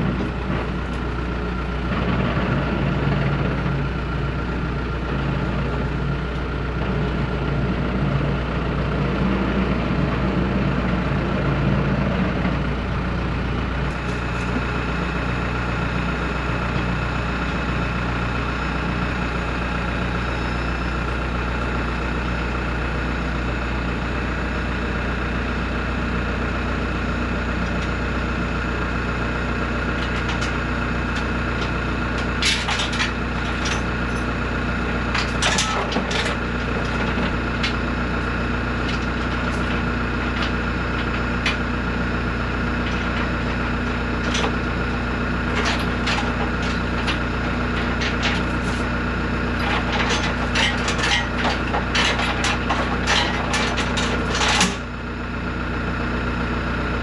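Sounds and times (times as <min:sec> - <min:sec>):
engine idling: 0:00.0 - 0:57.0
sharp clanks and knocks: 0:30.0 - 0:41.7, 0:42.8 - 0:54.9.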